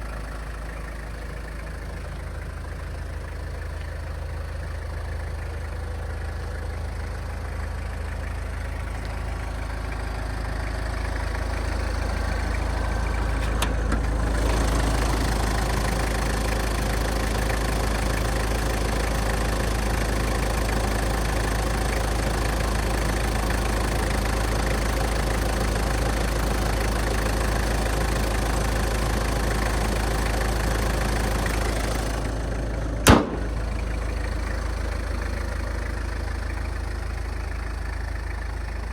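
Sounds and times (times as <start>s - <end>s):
diesel engine idling: 0.0s - 38.9s
sharp click: 33.1s - 33.6s.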